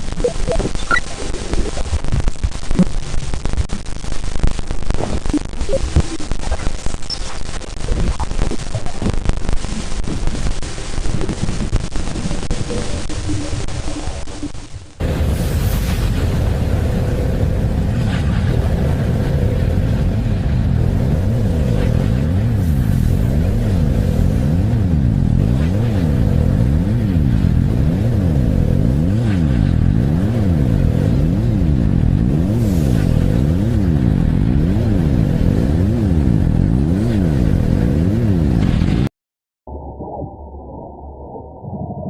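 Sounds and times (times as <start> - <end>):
low rumbling drone: 14.9 - 39.1.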